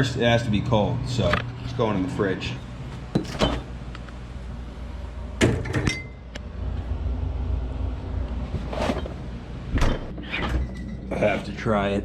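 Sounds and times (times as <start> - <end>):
steady low hum: 0.0 - 12.0
refrigerator door opening and shutting: 3.2 - 3.8, 5.4 - 6.2, 8.5 - 11.5.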